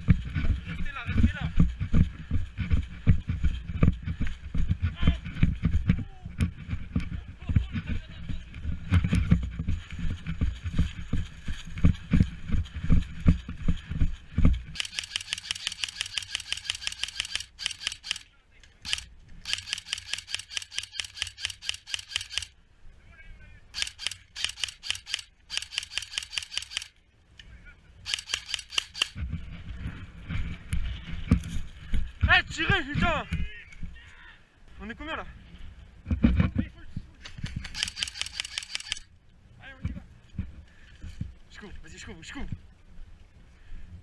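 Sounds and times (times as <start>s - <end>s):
low rumbling of movement: 0.0s - 14.8s, 29.1s - 32.3s
running footsteps: 0.0s - 18.2s
sharp clicks: 14.8s - 22.6s, 23.8s - 27.5s, 28.1s - 29.2s, 37.2s - 39.1s.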